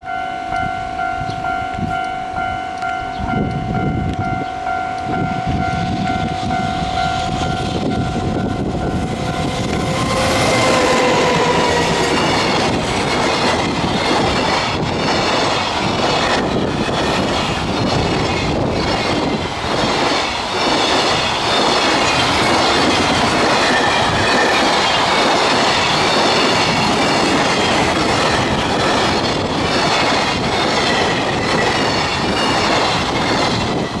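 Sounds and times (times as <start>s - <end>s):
locomotive tone falling in pitch: 0.0s - 14.6s
train wheels rumbling on rails: 0.0s - 34.0s.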